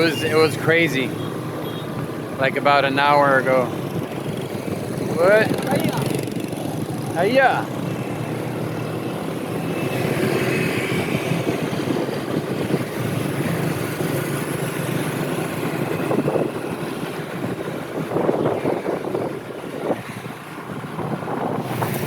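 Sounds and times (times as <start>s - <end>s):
wind rushing over microphone: 2.0s - 22.0s.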